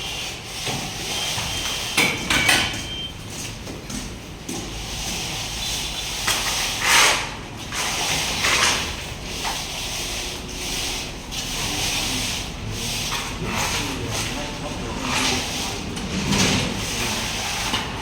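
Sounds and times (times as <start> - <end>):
rough scraping strokes: 5.2 - 18.0.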